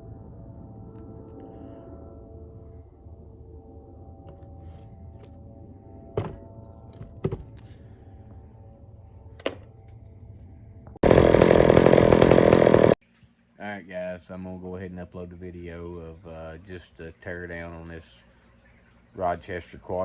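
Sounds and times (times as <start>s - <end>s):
chainsaw running at high revs: 11.0s - 13.0s.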